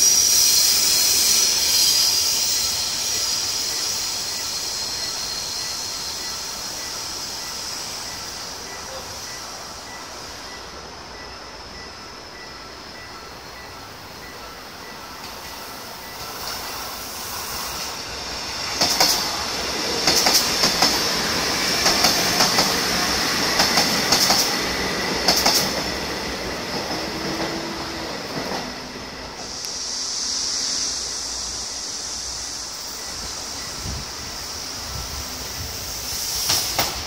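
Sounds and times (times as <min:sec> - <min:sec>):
high-pitched wheel squeal: 0:00.0 - 0:10.6
train wheels clicking over rail joints: 0:12.4 - 0:31.0, 0:33.0 - 0:37.0.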